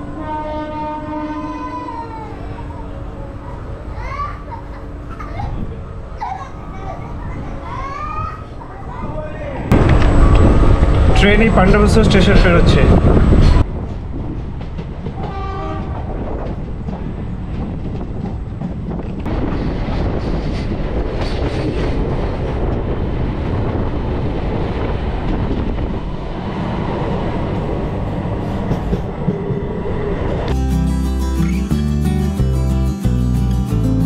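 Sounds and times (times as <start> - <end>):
train horn: 0.0 - 1.6, 15.2 - 16.1
train wheels clattering on rails: 13.3 - 22.9, 28.4 - 29.8.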